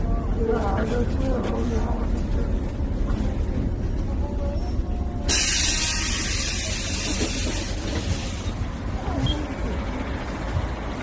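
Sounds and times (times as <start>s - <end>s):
bus engine low rumble: 0.0s - 11.0s
loud air brake hiss: 5.3s - 8.5s.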